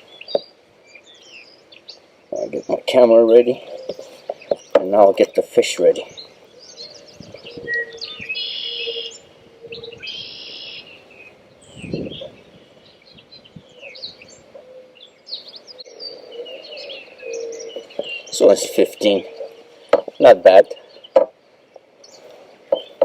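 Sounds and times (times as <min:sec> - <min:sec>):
songbirds chirping and singing: 0:00.0 - 0:23.0
buzzy bird trills: 0:05.7 - 0:23.0.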